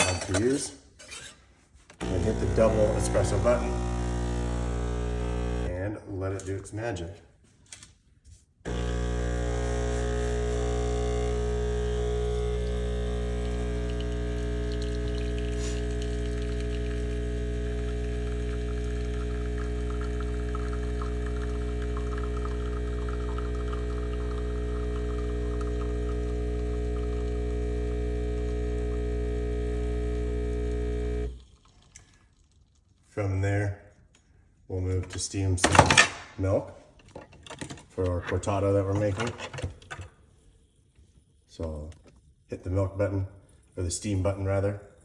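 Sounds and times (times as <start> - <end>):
espresso machine pump humming: 2.0 - 5.7, 8.7 - 31.8
espresso trickling into cup: 2.0 - 5.7, 8.7 - 32.0.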